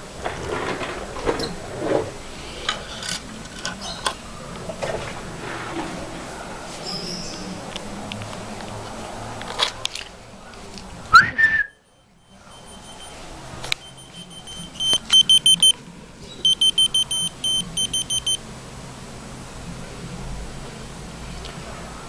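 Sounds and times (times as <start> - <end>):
rapid high-pitched electronic beeps: 11.9 - 13.2, 13.8 - 15.7, 16.4 - 18.4.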